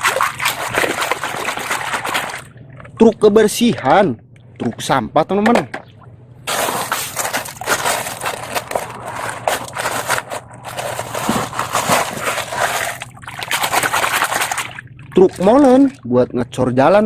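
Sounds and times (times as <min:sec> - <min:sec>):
plastic toy truck crackling: 0:06.5 - 0:14.6.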